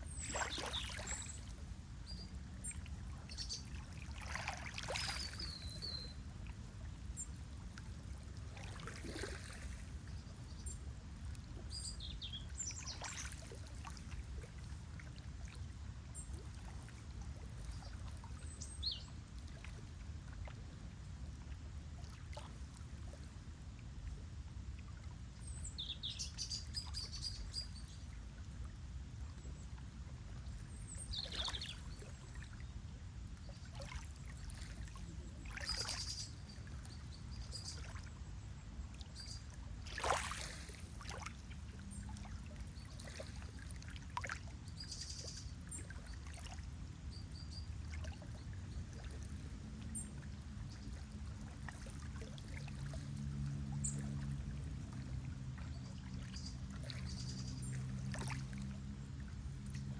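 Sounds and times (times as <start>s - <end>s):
low steady hum: 0.0s - 59.9s
water lapping and splashing: 0.0s - 59.9s
faint bird chirps: 35.4s - 38.1s.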